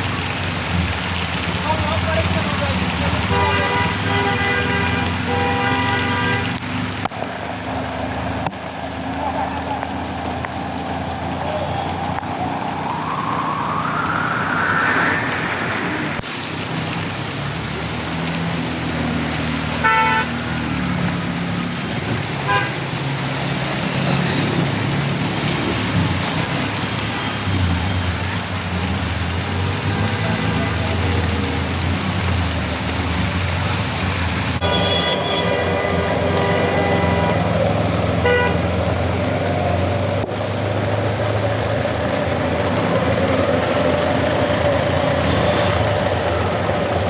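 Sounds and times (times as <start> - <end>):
vehicle engines running: 0.0 - 47.0
car horn toots: 3.3 - 6.6, 19.8 - 20.3, 22.5 - 22.8, 34.6 - 37.5, 38.2 - 38.7
hiss of water: 9.0 - 21.6
rising whine: 12.1 - 16.2.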